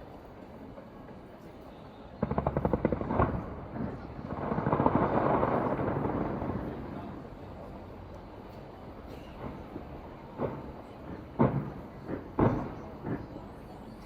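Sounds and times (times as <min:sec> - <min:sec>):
firework crackling rush: 0:00.0 - 0:14.0
firework bang: 0:02.2 - 0:07.4, 0:09.0 - 0:13.7
firework pops: 0:02.2 - 0:07.4, 0:08.5 - 0:14.0.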